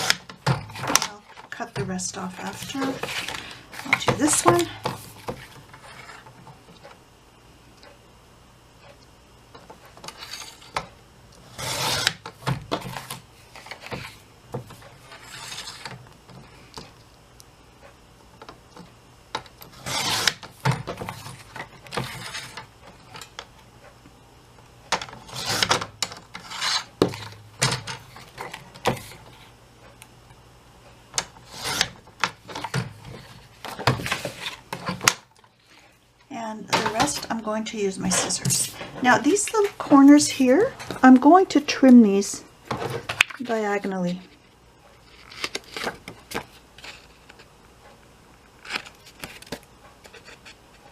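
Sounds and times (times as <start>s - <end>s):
paper trimmer blade cutting paper: 11.5s - 12.3s, 19.7s - 20.4s.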